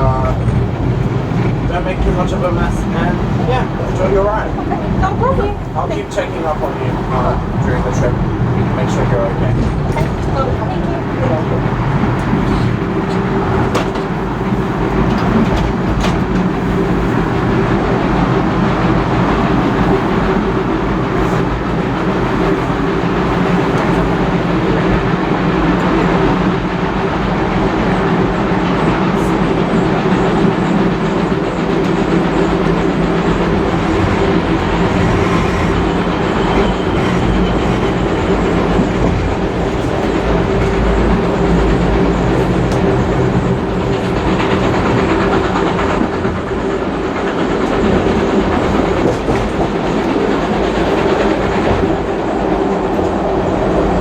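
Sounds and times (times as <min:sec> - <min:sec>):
train carriage rumbling on track: 0:00.0 - 0:54.0.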